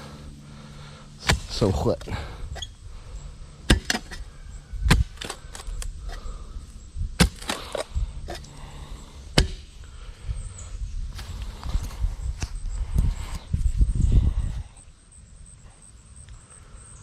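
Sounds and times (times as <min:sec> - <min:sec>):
digging tool chopping soil and roots: 0:01.2 - 0:02.7, 0:03.6 - 0:06.3, 0:07.2 - 0:08.5, 0:09.2 - 0:09.8.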